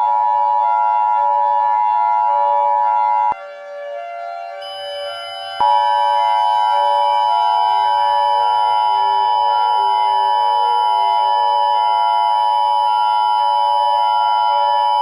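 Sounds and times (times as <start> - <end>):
electronic emergency alert tone: 4.5 - 15.0.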